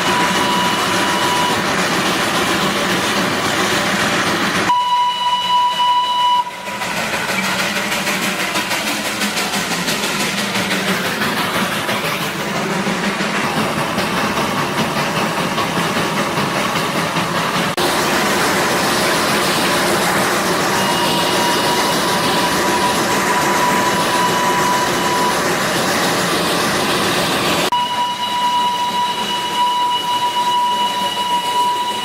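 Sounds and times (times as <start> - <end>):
narrow-gauge train running: 0.0 - 32.0
steady high-pitched tone: 19.2 - 25.9, 27.7 - 32.0.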